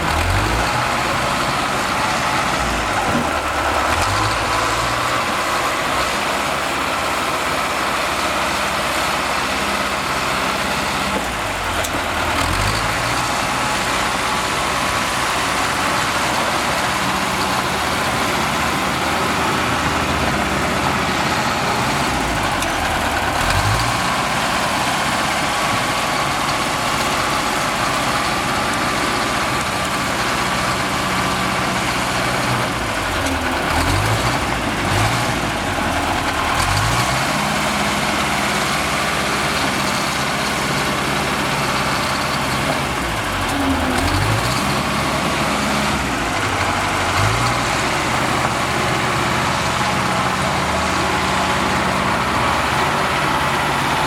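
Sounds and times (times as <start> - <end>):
heavy machinery diesel engine: 0.0 - 54.0.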